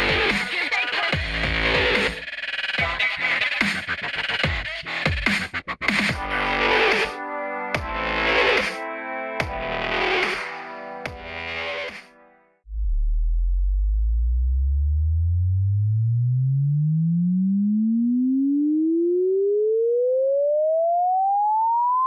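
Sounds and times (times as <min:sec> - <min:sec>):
sine-wave frequency sweep: 0:12.7 - 0:22.0.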